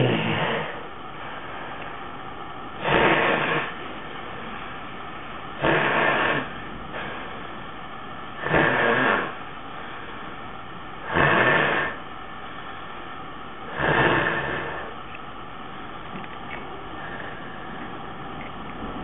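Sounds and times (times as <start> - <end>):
man snoring harshly: 0.0 - 0.9, 2.8 - 3.8, 5.6 - 7.1, 8.4 - 9.4, 11.0 - 12.0, 13.7 - 15.0
steady background hiss: 0.0 - 19.0.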